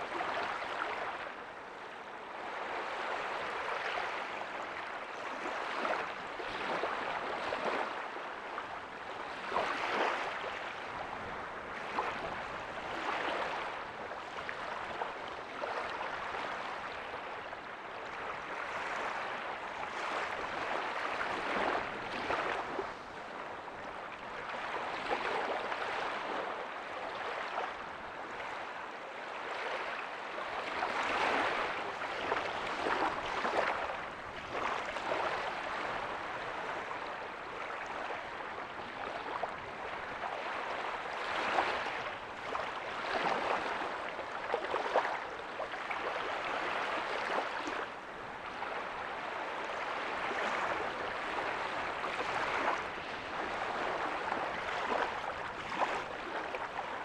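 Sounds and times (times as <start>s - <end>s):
small waves breaking on beach: 0.0s - 57.0s.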